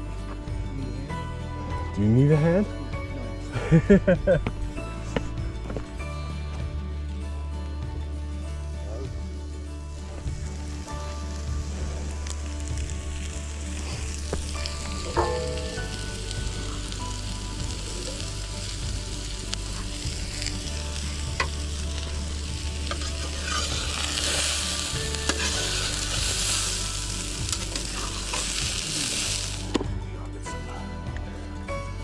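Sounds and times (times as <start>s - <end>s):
fish sizzling in oil: 11.2s - 29.8s.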